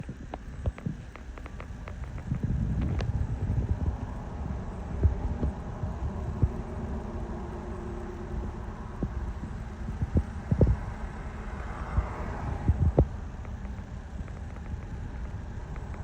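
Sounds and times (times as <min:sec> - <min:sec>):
motor vehicle rumbling: 0:00.0 - 0:16.0.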